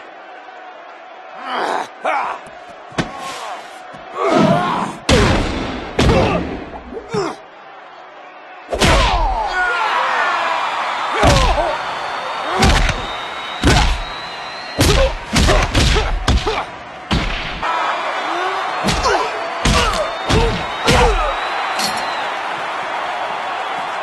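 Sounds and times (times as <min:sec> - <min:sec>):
grunts and shouts: 0:01.4 - 0:05.3, 0:06.0 - 0:07.4.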